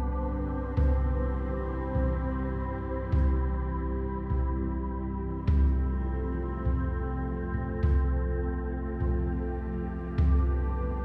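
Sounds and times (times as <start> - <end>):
ambient background music: 0.0 - 11.0.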